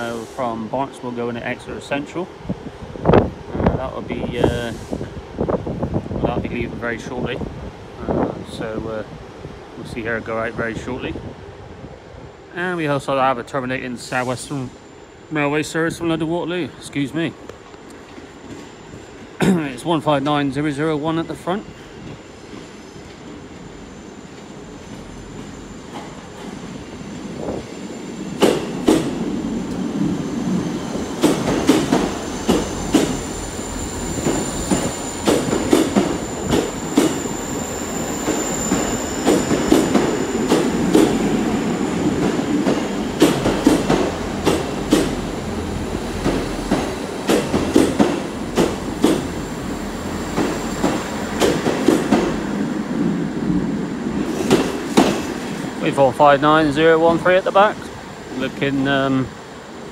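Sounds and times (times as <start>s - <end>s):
train wheels clattering: 28.4s - 29.9s, 31.0s - 37.4s, 38.2s - 41.4s, 42.1s - 45.4s, 46.2s - 49.4s, 50.3s - 52.5s, 54.2s - 55.6s
high wheel squeal: 32.1s - 42.1s.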